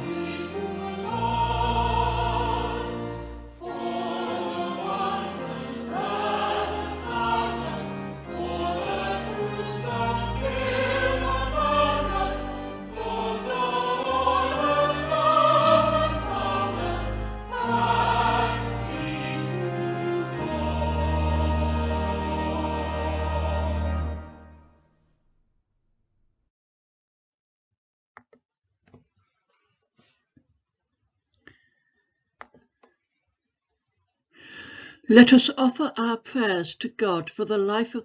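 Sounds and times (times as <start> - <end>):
choir singing: 0.0 - 24.6
instrumental accompaniment: 0.0 - 24.7.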